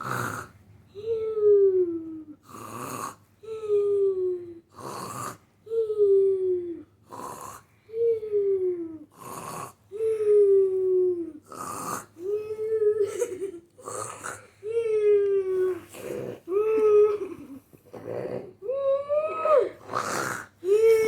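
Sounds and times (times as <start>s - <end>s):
cartoon voice snoring: 0.0s - 0.5s, 2.4s - 3.8s, 4.7s - 5.4s, 7.0s - 7.7s, 9.1s - 12.4s, 13.8s - 14.5s, 15.6s - 17.3s, 17.9s - 18.8s, 19.4s - 21.0s.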